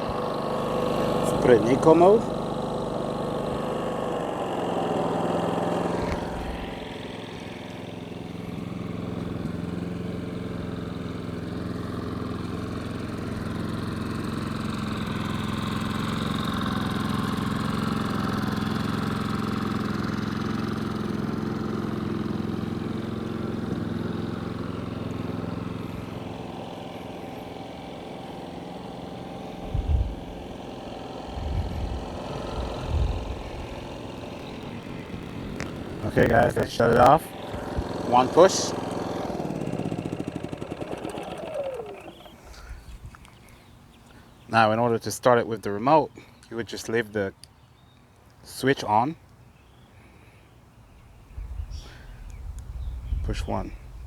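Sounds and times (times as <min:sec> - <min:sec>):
generator engine running: 0:00.0 - 0:47.0, 0:50.0 - 0:54.0
low thumps: 0:51.2 - 0:54.0.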